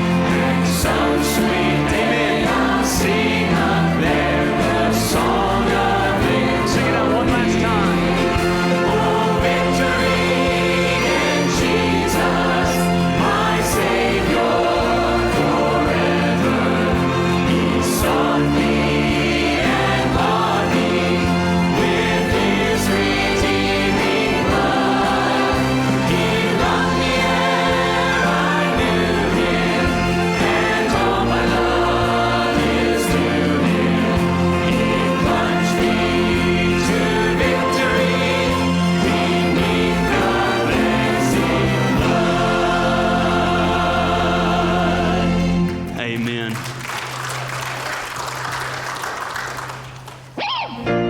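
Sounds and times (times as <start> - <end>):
choir singing worship music: 0.0 - 46.0
band playing: 0.0 - 51.0
instrumental accompaniment: 0.0 - 51.0.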